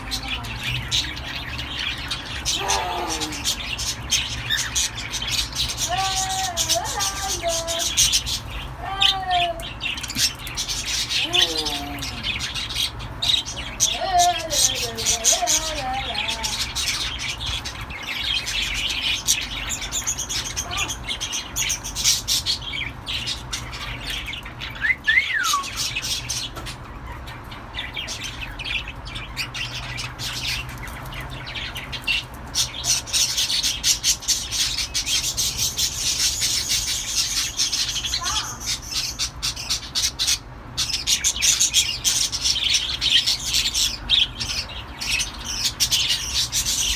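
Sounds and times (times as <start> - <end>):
cockatiels chirping and chattering: 0.0 - 46.9.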